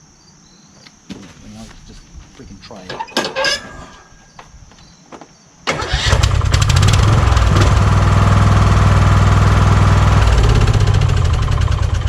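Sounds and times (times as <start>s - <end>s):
lawn tractor engine running: 5.7s - 12.0s.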